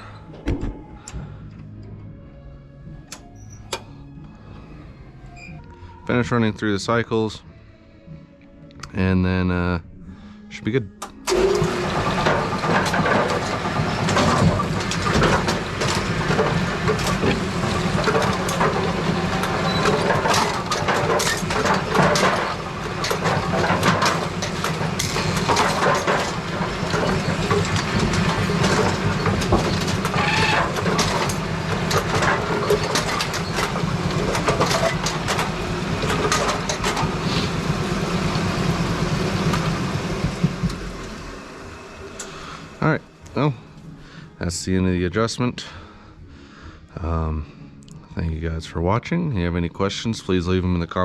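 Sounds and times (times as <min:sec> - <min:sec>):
mechanical clanking and clattering: 0:00.0 - 0:01.6, 0:11.0 - 0:43.4
pinsetter motor hum: 0:11.0 - 0:44.2.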